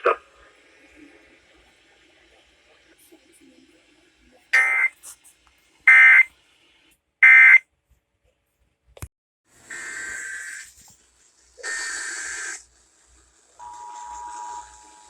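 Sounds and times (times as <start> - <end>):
buzzy digital data tones: 4.6 - 5.0.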